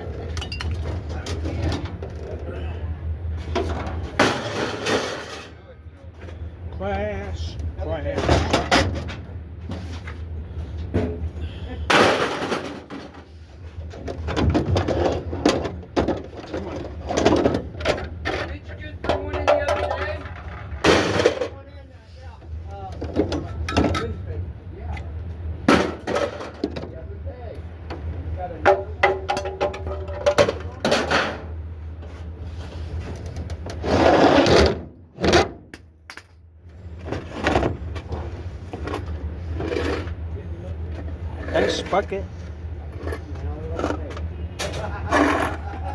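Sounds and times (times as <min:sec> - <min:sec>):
steady low hum: 0:00.0 - 0:45.9
scrap metal clanking: 0:03.4 - 0:05.7.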